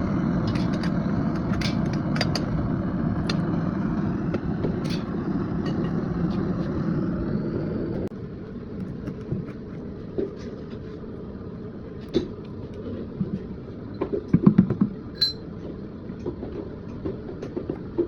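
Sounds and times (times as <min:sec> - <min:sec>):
low rumble: 0:00.0 - 0:09.0
hard objects clinking and knocking: 0:00.5 - 0:02.5, 0:15.2 - 0:15.5
high metallic ring: 0:15.2 - 0:15.5.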